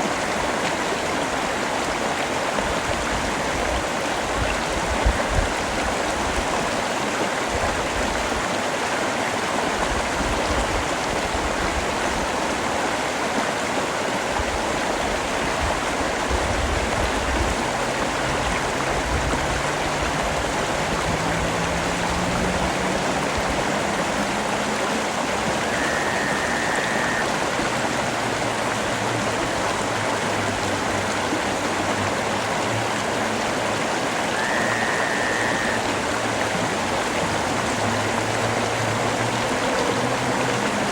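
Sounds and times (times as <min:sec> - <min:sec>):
steady rain hiss: 0:14.4 - 0:40.9
faint low hum rising in pitch: 0:18.4 - 0:27.5, 0:34.3 - 0:36.2
brief high tones: 0:25.4 - 0:27.4, 0:34.3 - 0:36.1.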